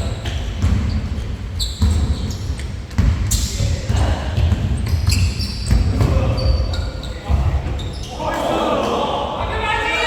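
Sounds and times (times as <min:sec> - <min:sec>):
sneakers squeaking on court: 0:00.0 - 0:08.2
basketball bouncing on hardwood: 0:00.2 - 0:01.1, 0:02.9 - 0:03.2, 0:03.9 - 0:06.2.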